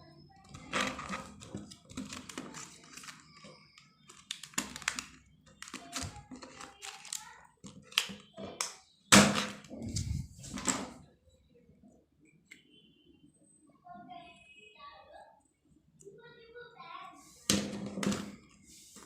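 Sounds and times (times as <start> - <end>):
pens and plastic packaging handled: 0.4 - 11.0, 17.5 - 19.0.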